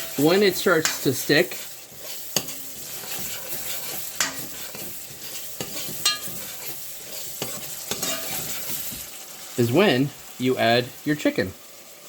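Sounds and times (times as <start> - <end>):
spoon stirring and scraping: 0.0 - 9.3
paste sizzling in hot oil: 0.0 - 12.0.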